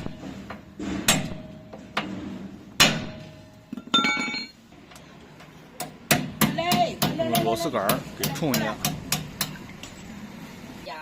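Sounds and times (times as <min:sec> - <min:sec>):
hammer striking steel punch: 0:00.8 - 0:02.2, 0:02.8 - 0:03.4, 0:05.8 - 0:09.6
ringing metal clink: 0:03.8 - 0:04.6.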